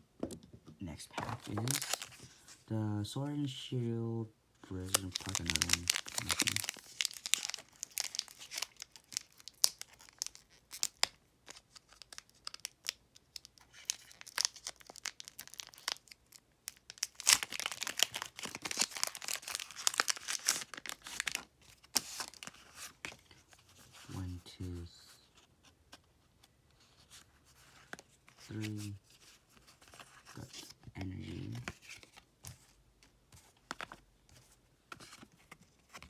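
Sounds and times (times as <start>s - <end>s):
foil wrapper crinkling and tearing: 1.3s - 2.3s, 4.7s - 23.0s.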